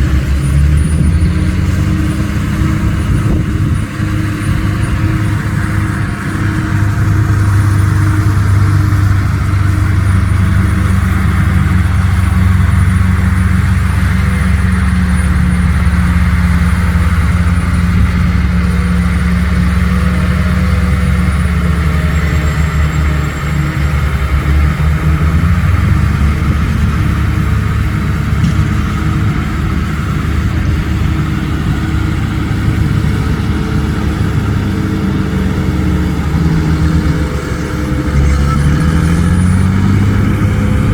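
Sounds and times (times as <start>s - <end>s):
diesel truck engine running: 0.0s - 40.9s.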